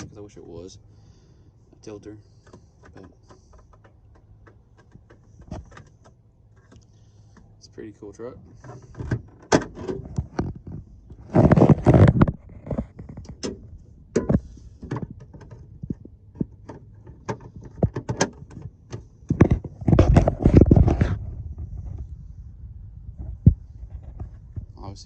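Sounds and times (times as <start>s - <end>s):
clicks and knocks of handling: 1.7s - 7.5s, 8.5s - 21.1s
noisy scraping: 8.4s - 18.0s, 19.1s - 25.0s.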